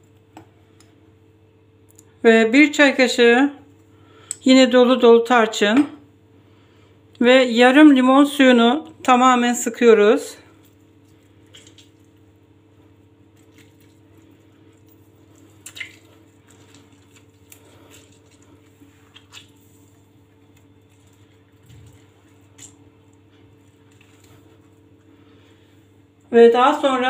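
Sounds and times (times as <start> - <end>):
low steady hum: 0.0 - 27.0
wet squelching: 10.5 - 25.9
lemon squeezed by hand: 15.2 - 20.0.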